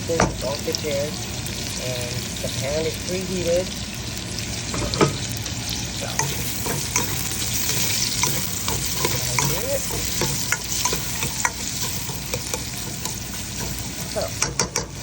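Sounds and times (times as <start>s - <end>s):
food sizzling in hot oil: 0.0s - 15.0s
utensil clicking against pot: 6.1s - 15.0s.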